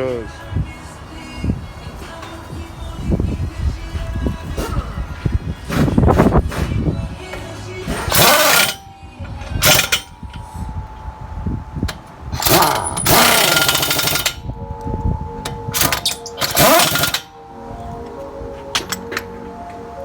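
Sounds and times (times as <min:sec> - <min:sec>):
pneumatic impact wrench hammering: 0:07.8 - 0:08.8, 0:09.5 - 0:10.4, 0:11.9 - 0:14.4, 0:15.4 - 0:17.3.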